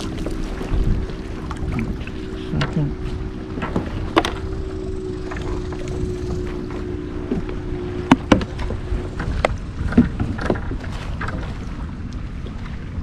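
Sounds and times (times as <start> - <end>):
steady hum: 0.0 - 10.8
wind rumbling on microphone: 0.0 - 13.0
knocks and taps on kayak: 3.5 - 4.5, 5.2 - 12.2.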